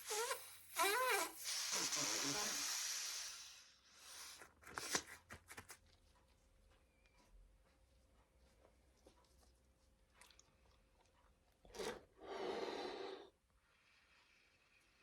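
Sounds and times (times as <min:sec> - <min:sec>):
rubbery balloon handling: 0:00.0 - 0:02.0, 0:04.2 - 0:05.8
blowing air into balloon: 0:00.0 - 0:04.9.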